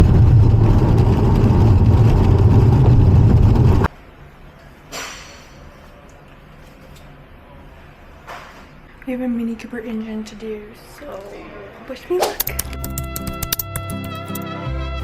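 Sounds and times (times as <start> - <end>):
car engine running loudly: 0.0 - 3.9.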